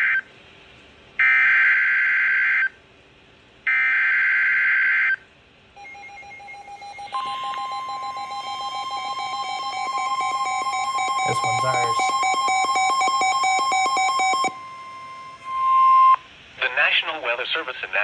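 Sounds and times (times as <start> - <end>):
alert attention tone: 5.8 - 16.2
warbling digital data tones: 5.8 - 16.2.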